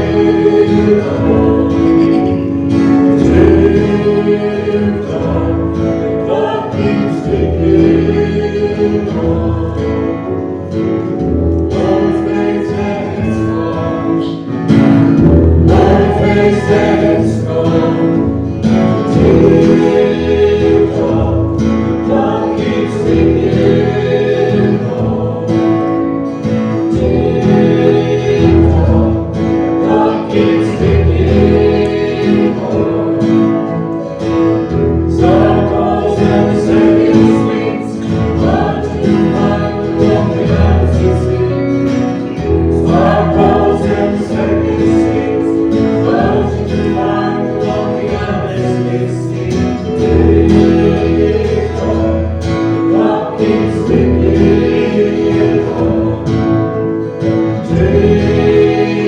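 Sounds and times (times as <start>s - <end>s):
group singing worship song: 0.0s - 59.0s
instrumental accompaniment: 0.0s - 59.0s
steady bass line: 0.0s - 59.0s.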